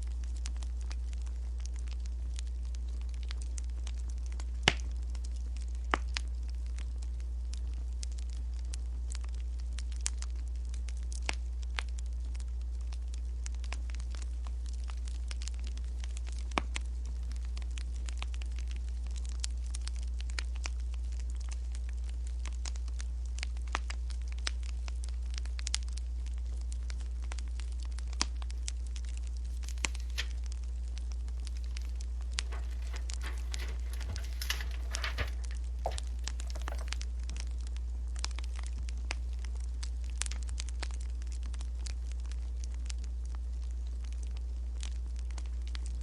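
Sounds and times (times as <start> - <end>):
wood fire crackling and popping: 0.0 - 46.0
rustle: 31.5 - 37.0.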